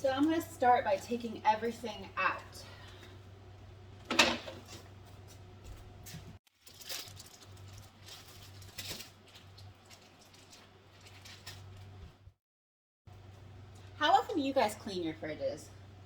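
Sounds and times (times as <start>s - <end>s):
refrigerator hum: 0.0s - 12.4s, 13.1s - 16.0s
food packaging rustling: 4.4s - 12.2s.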